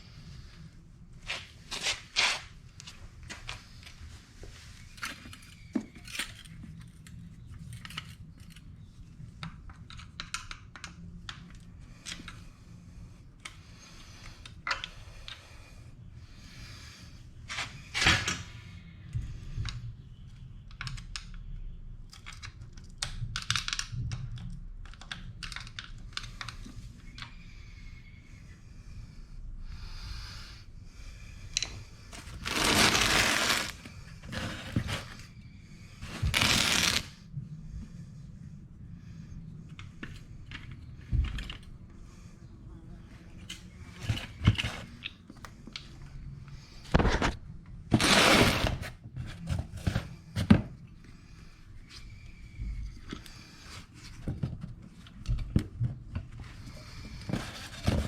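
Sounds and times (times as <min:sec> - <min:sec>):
scraping rustle: 0:32.2 - 0:35.2, 0:36.0 - 0:37.1.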